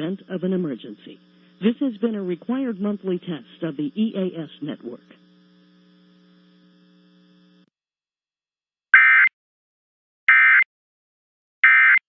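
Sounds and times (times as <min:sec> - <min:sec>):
faint mains hum: 0:00.0 - 0:07.7.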